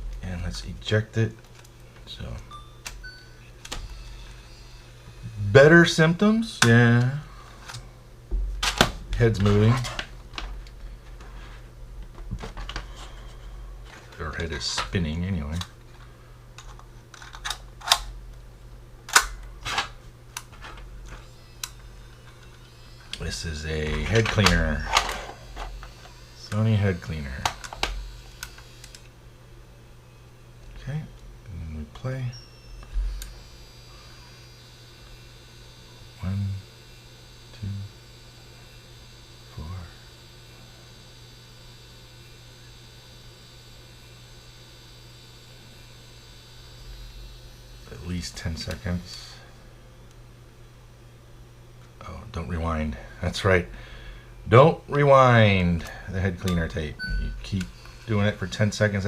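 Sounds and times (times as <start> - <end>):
faint high whine: 0.0 - 16.4, 20.6 - 50.1, 52.0 - 59.0
low steady hum: 0.0 - 59.0.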